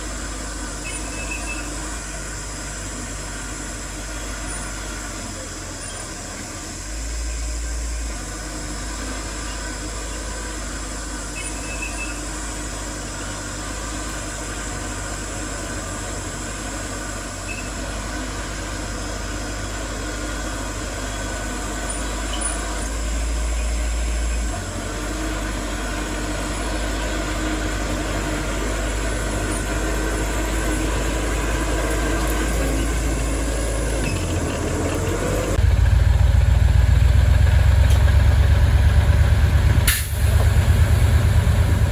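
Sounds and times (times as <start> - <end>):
heavy diesel machinery rumbling: 0.0 - 41.9
engine revving up: 18.2 - 41.9.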